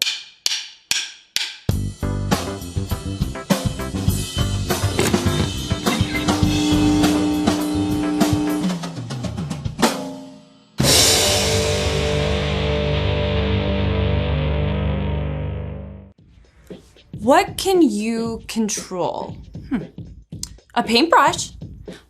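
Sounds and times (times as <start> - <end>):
upbeat music with drum kit: 1.4 - 14.2, 16.2 - 22.0
sustained ringing chord: 5.3 - 8.8.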